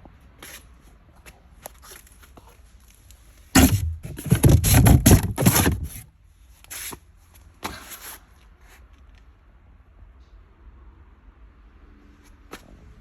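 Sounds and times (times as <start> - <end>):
handling scrapes and knocks: 3.6 - 6.1.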